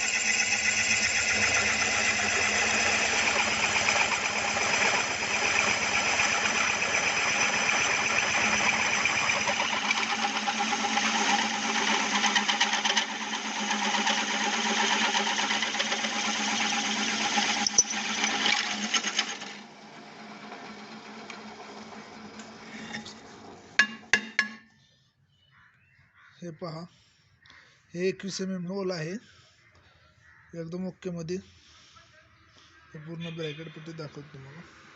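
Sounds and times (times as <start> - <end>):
drill boring through metal: 0.0 - 24.0.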